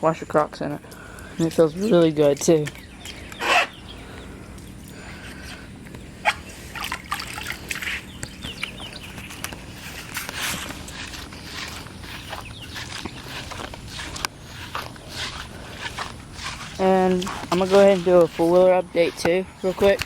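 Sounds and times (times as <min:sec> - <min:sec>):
water splashing in a bucket: 0:06.2 - 0:08.5.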